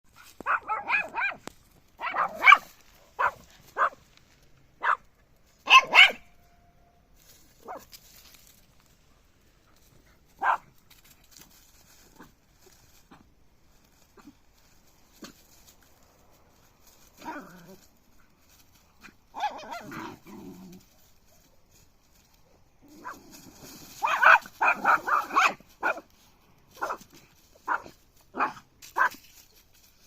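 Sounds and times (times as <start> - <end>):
puppy yipping: 5.7 - 6.3.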